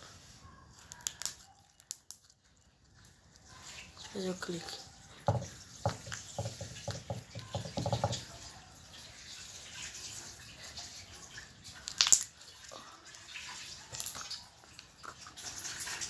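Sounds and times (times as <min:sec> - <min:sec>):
slime clicking and popping: 0:00.9 - 0:02.3, 0:11.9 - 0:12.3.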